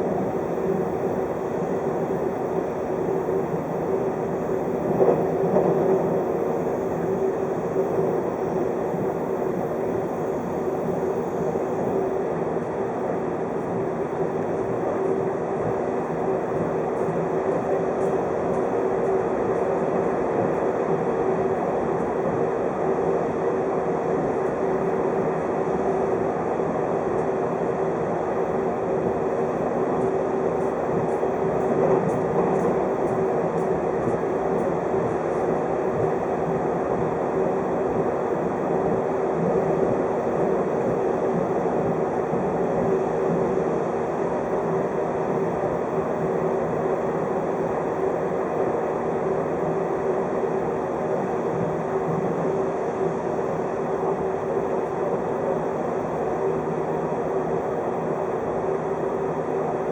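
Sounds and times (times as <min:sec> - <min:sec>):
constant hum: 0:00.0 - 0:59.9
train wheels rolling on rail: 0:04.6 - 0:09.2.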